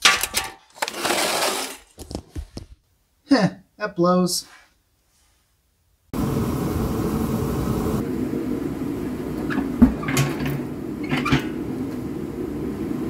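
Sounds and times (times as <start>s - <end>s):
steady low hum: 6.1s - 13.0s.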